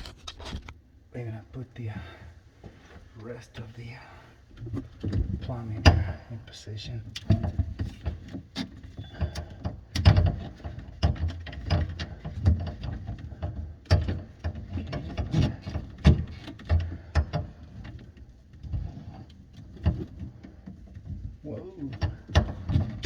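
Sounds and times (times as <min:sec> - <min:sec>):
pipe fittings knocking and clicking: 0:07.1 - 0:23.0.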